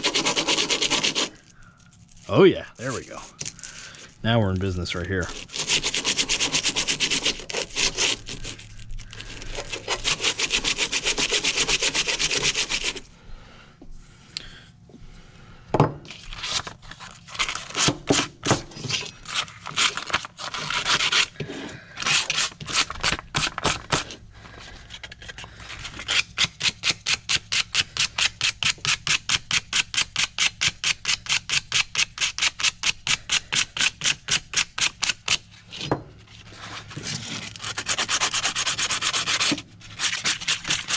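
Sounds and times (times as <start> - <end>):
sandpaper rubbing on steel: 0.0 - 1.4, 5.2 - 13.0, 25.8 - 35.5, 36.5 - 40.9.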